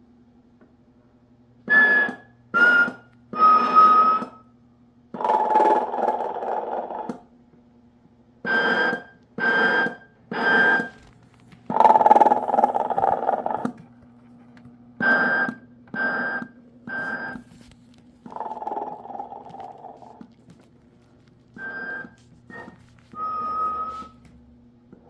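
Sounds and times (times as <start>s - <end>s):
toy snoring with whistling puffs: 11.7s - 13.7s, 18.2s - 20.2s
low steady hum: 15.7s - 25.0s.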